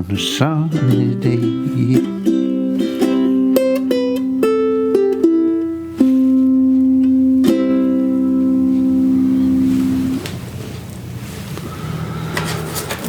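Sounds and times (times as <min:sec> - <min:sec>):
ukulele plucked and strummed: 0:00.0 - 0:10.3.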